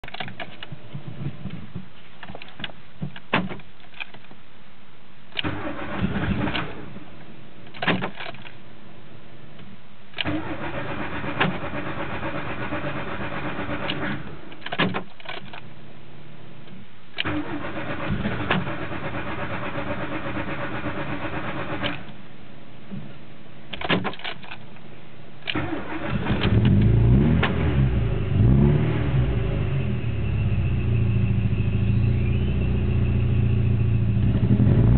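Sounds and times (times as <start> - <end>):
engine cranking on starter: 5.4 - 6.8, 10.2 - 14.2, 17.2 - 22.0, 25.5 - 27.7.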